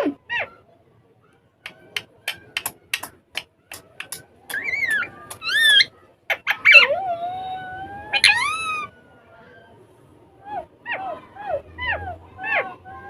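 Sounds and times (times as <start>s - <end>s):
parrots whistling and squawking: 4.5s - 6.9s, 8.1s - 8.9s.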